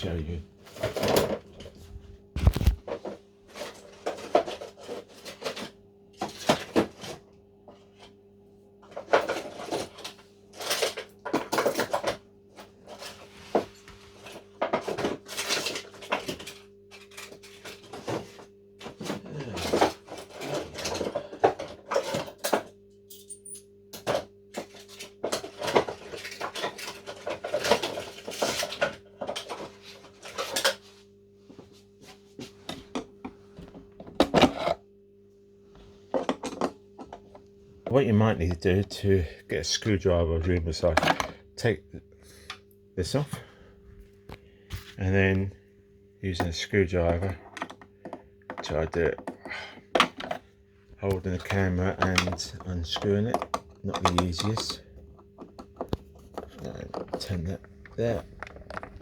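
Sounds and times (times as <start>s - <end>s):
steady low hum: 0.0s - 59.0s.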